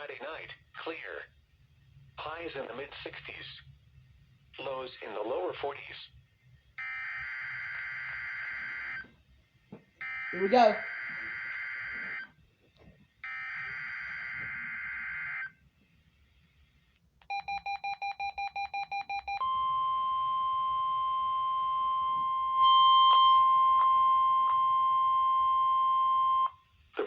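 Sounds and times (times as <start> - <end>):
steady warning alarm tone: 6.8 - 9.1, 10.0 - 12.4, 13.2 - 15.6, 17.3 - 26.6.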